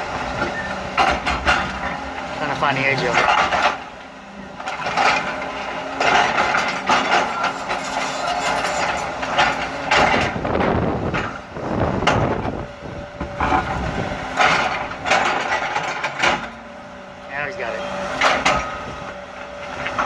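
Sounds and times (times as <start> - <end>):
excavator engine: 0.0 - 20.0
excavator bucket scraping concrete: 0.2 - 12.6, 13.2 - 16.6.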